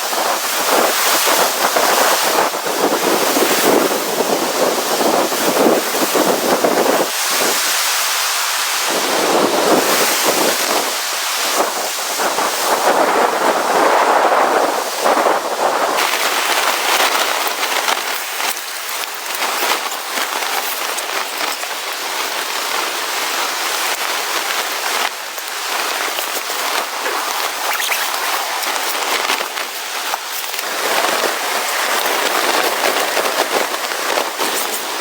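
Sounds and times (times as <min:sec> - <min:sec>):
rain-like pattering crackle: 0:00.0 - 0:03.4, 0:15.9 - 0:35.0.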